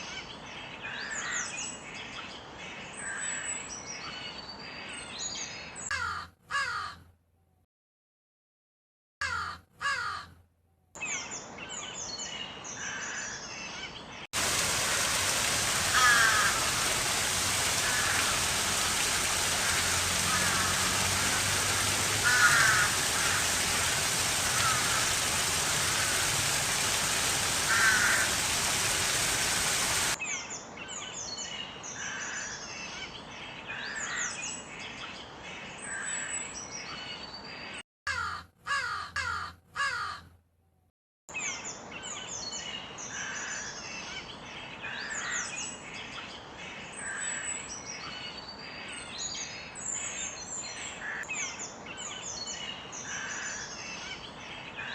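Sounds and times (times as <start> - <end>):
crows cawing: 5.9 - 7.0, 9.2 - 10.4, 14.4 - 30.2, 38.1 - 40.3
small birds chirping: 11.0 - 31.7
heavy rain: 14.4 - 30.2.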